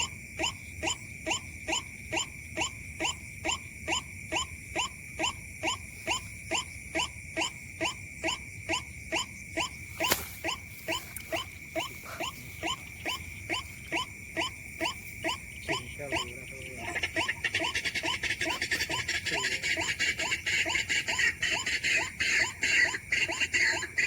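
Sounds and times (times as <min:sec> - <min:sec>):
bird croaking call: 0:00.0 - 0:24.0
chirring insect chorus: 0:00.0 - 0:24.0
insects buzzing: 0:00.0 - 0:24.0.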